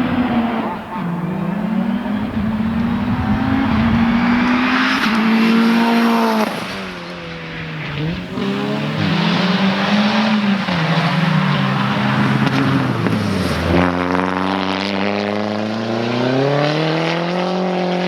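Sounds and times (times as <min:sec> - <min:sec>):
race car engine revving: 0:00.0 - 0:18.0.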